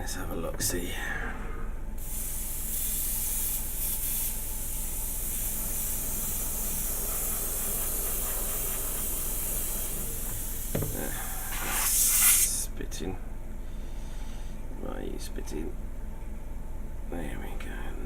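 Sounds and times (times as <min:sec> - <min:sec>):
airbrush spraying hiss: 0:02.0 - 0:12.6
short knock: 0:10.7 - 0:11.0.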